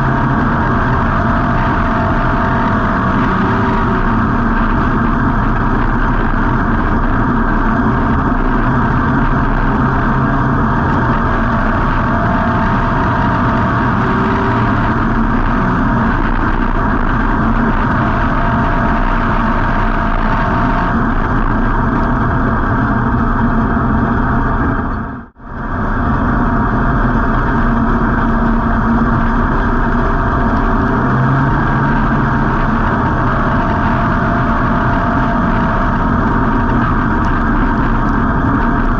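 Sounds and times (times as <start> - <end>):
race car engine running: 0.0 - 38.9
wind and chassis noise: 0.0 - 38.9.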